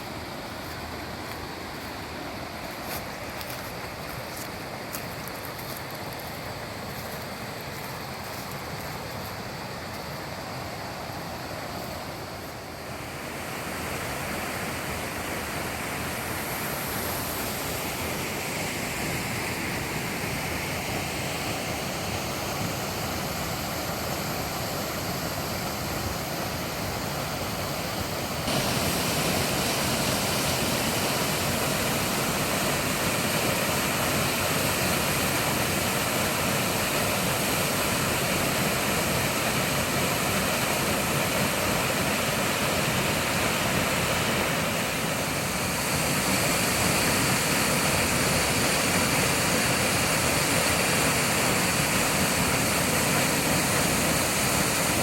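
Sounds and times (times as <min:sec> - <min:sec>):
waterfall rushing: 0:00.0 - 0:55.0.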